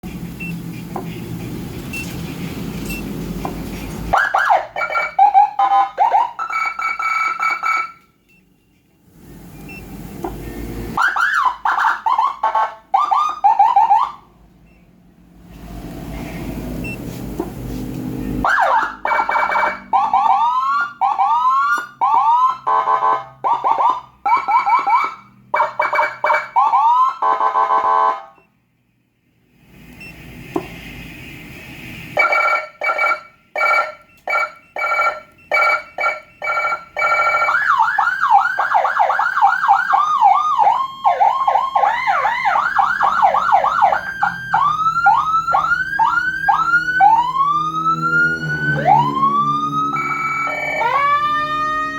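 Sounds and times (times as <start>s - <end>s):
electronic siren cycling tones: 4.1s - 8.0s, 18.4s - 28.4s, 32.2s - 51.9s.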